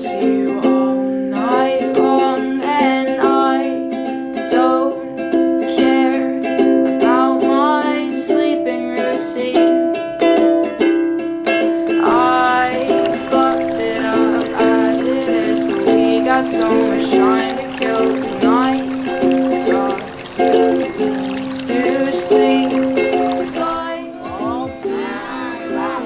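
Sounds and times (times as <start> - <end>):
plucked strings: 11.9 - 26.0
person singing: 12.0 - 26.0.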